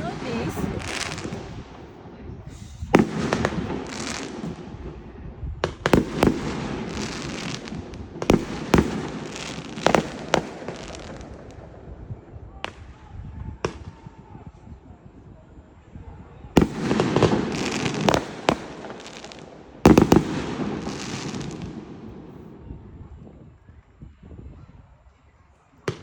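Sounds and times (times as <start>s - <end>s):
fireworks crackling: 0.0s - 14.2s, 16.6s - 22.9s
fireworks bangs: 0.0s - 14.3s, 16.6s - 22.9s.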